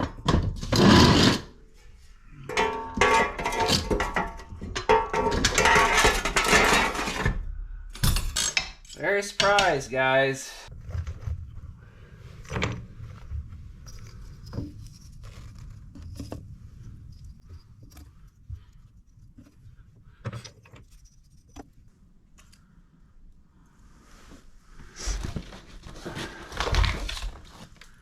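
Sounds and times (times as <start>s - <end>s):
objects clinking and rattling: 2.4s - 7.4s
low rumble: 10.7s - 19.1s.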